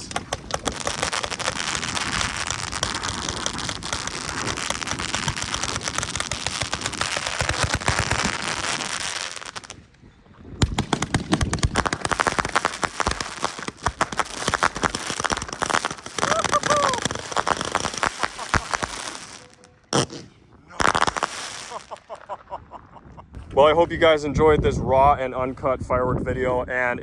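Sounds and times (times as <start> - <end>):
firework crackling and popping: 0.0 - 22.3.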